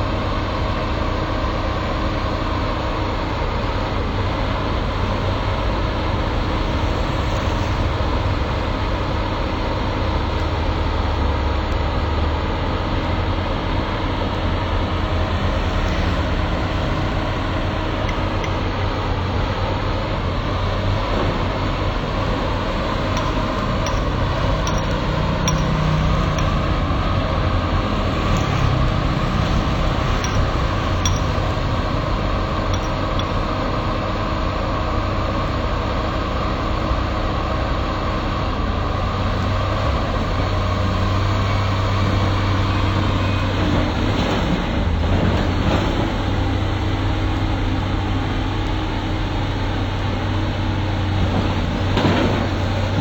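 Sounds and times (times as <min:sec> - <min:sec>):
excavator diesel engine running: 0:00.0 - 0:53.0
faint metallic clinks: 0:23.1 - 0:26.8, 0:30.1 - 0:31.6, 0:32.7 - 0:33.4.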